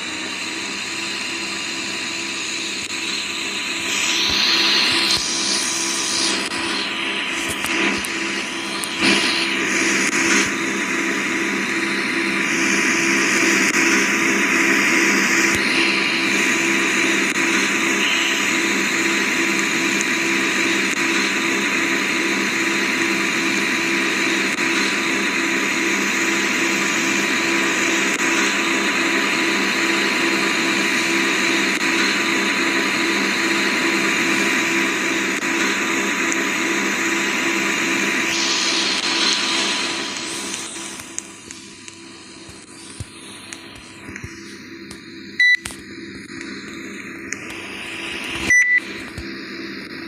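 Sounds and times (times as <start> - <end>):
air conditioner running: 32.7 - 49.4.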